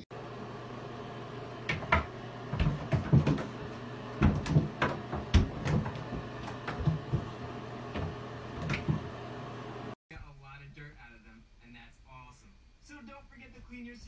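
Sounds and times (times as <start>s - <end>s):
irregular knocks and clicks: 1.6s - 9.1s.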